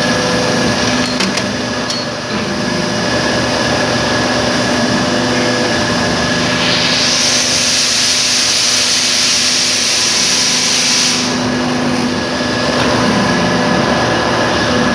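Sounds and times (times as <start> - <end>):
hydraulic power pack humming: 0.0 - 14.9
loud hydraulic hiss: 4.5 - 13.0.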